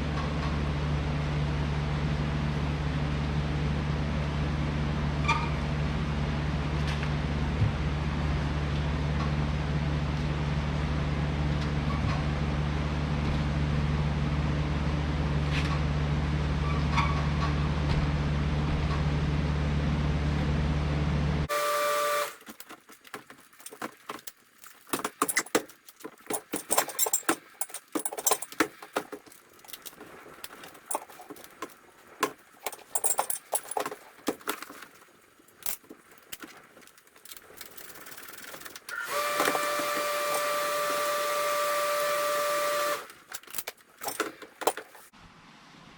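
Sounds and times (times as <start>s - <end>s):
small metal parts clinking: 22.2s - 40.6s, 42.9s - 45.1s.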